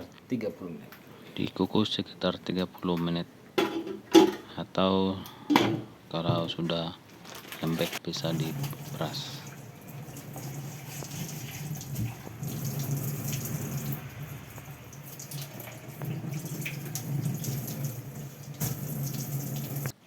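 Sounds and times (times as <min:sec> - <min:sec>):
tap water running: 0:08.2 - 0:20.0.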